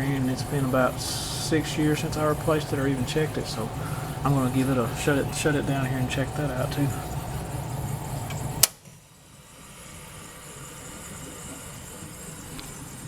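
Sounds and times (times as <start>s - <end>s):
air handler humming: 0.0s - 8.9s, 9.7s - 13.0s
faint hiss: 0.0s - 13.0s
power switch click: 8.2s - 8.8s.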